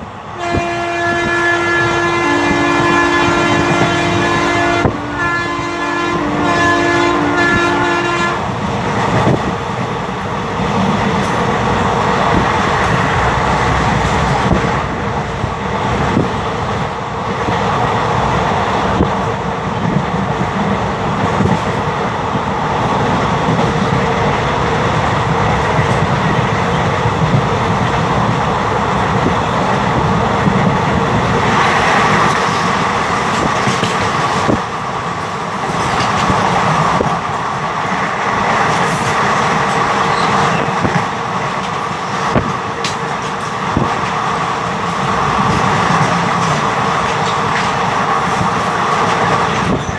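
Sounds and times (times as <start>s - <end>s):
train wheels rolling on rails: 0.0s - 49.9s
locomotive horn: 0.4s - 8.5s.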